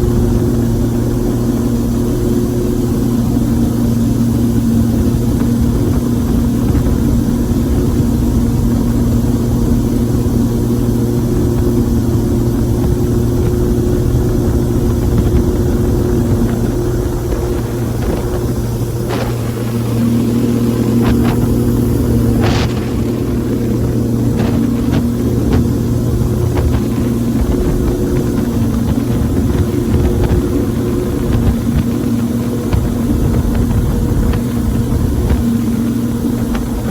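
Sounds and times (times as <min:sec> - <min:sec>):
engine running steadily: 0:00.0 - 0:36.9.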